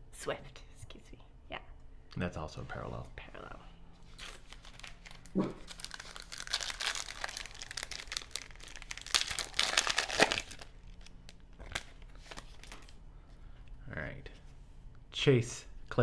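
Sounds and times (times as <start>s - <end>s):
foil wrapper tearing and crinkling: 4.1s - 13.0s.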